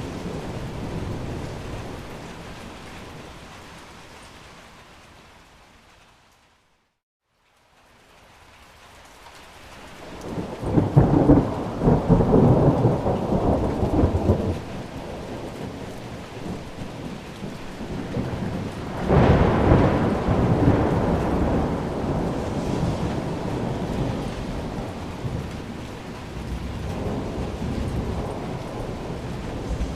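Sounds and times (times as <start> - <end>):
heavy rain: 0.0 - 29.9
thunder rolling: 10.2 - 29.9.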